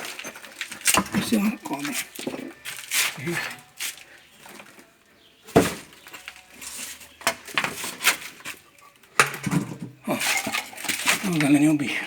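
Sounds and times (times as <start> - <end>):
hard objects clinking and knocking: 0.0 - 4.9, 5.5 - 11.6.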